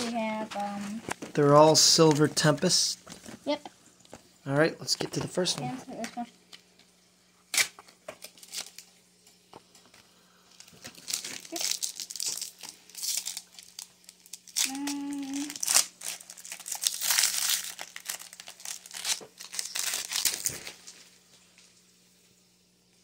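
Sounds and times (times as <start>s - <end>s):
foil wrapper crinkling and tearing: 7.4s - 9.0s, 10.5s - 21.1s.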